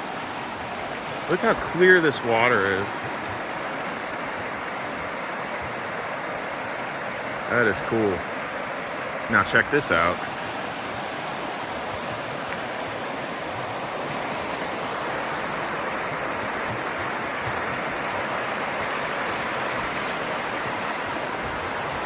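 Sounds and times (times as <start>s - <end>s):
water rushing over rocks: 0.0s - 22.0s.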